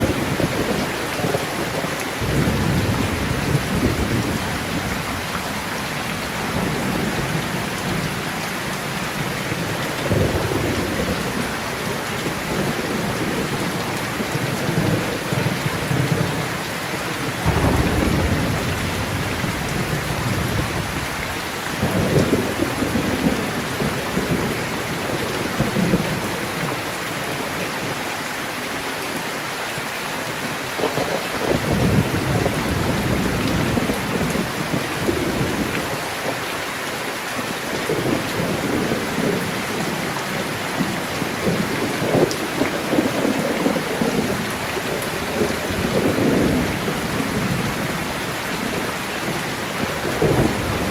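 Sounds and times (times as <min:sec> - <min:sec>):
rolling thunder: 0:00.0 - 0:05.4, 0:09.2 - 0:26.4, 0:37.9 - 0:50.9
heavy rain: 0:00.0 - 0:50.9.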